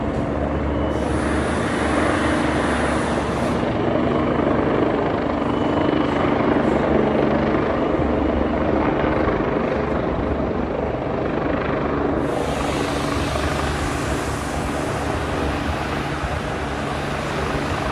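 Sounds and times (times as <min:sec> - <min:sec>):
helicopter rotors and turbine: 0:00.0 - 0:17.9.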